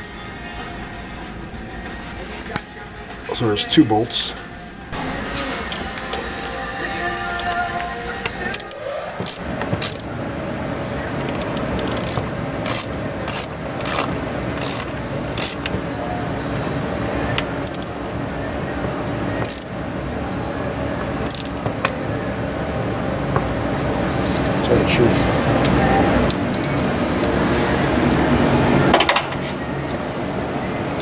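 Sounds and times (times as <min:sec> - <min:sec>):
ratchet wrench clicking: 0:08.5 - 0:10.1, 0:11.2 - 0:15.7, 0:17.6 - 0:17.9, 0:19.4 - 0:19.8, 0:21.3 - 0:21.6.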